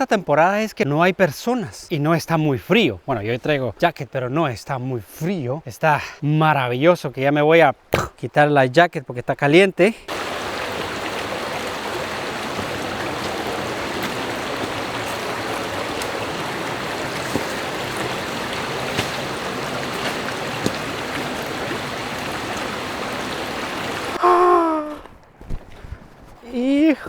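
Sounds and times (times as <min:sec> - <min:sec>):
river water rushing: 0:10.1 - 0:24.2.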